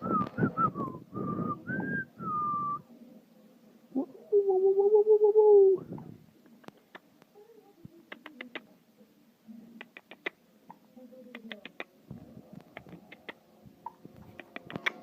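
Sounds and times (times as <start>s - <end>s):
quick sharp clicks: 12.6s - 13.4s, 14.2s - 15.0s.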